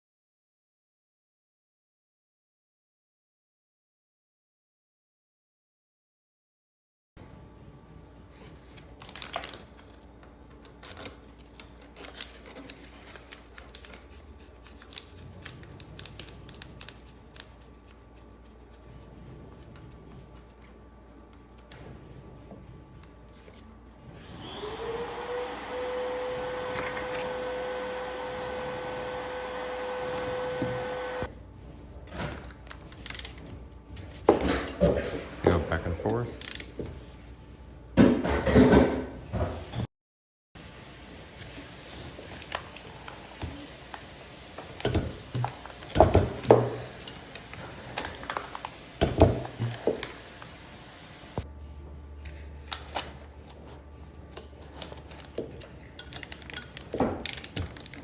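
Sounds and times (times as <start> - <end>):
metal parts and tools clinking: 10.6 - 14.0
electric machine whine and rush: 24.3 - 31.3.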